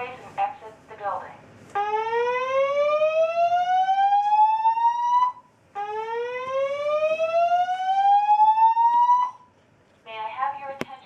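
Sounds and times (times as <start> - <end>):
fire alarm whoop tone: 1.8 - 9.5.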